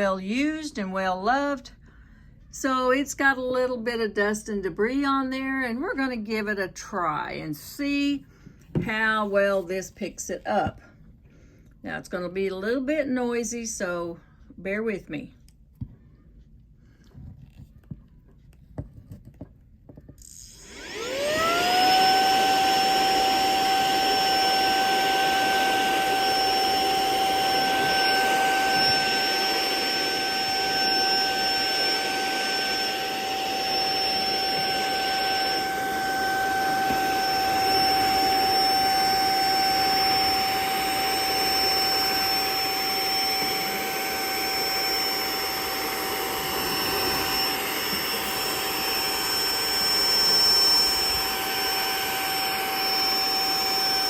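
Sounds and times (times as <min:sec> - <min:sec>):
handheld vacuum cleaner whine: 0:19.9 - 0:54.0.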